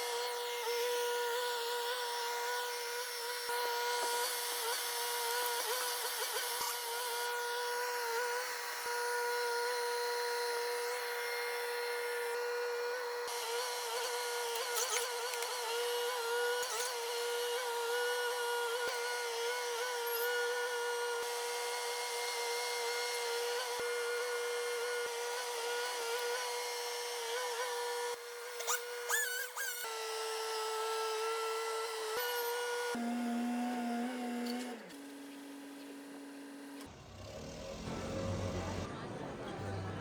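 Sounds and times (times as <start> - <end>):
small electric motor whining: 0.0 - 38.9.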